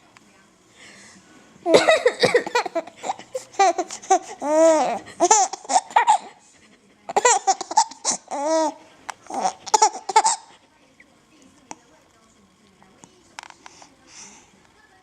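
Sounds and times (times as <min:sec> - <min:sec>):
baby laughing: 0:01.7 - 0:06.4, 0:07.1 - 0:10.5.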